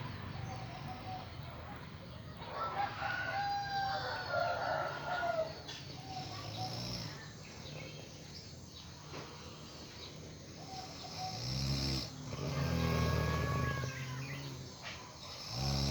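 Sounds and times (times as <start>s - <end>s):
rooster crowing: 2.3s - 6.4s, 12.3s - 14.7s.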